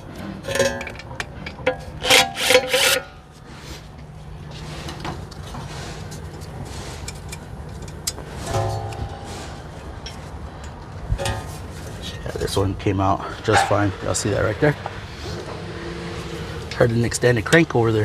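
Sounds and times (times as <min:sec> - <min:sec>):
quiet steady hum: 0:00.4 - 0:13.7.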